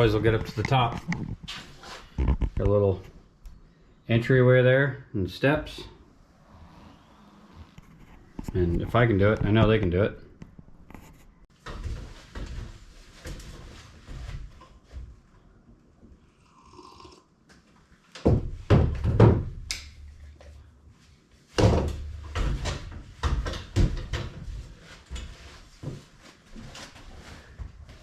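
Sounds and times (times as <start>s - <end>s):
footsteps climbing ladder: 0.0s - 3.1s, 7.9s - 15.2s, 21.5s - 28.0s.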